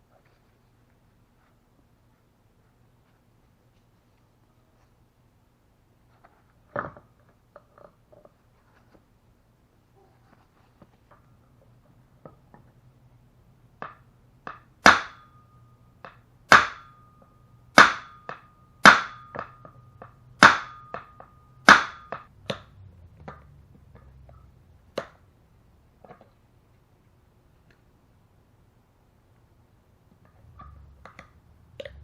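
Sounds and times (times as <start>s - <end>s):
hammer striking metal: 13.8s - 22.7s.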